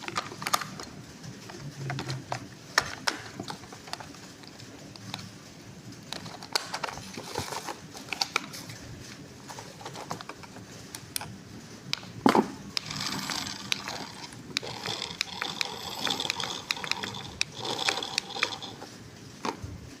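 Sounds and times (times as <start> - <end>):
plastic toy clicking and rattling: 12.8 - 18.9.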